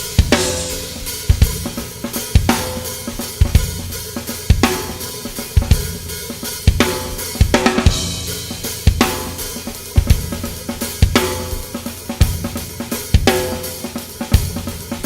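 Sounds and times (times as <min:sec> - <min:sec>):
kick drum hits: 0:00.0 - 0:03.9
cymbal crashes: 0:00.0 - 0:12.4
snare drum strokes: 0:00.0 - 0:14.3
hi-hat and cymbals ringing: 0:00.0 - 0:15.0.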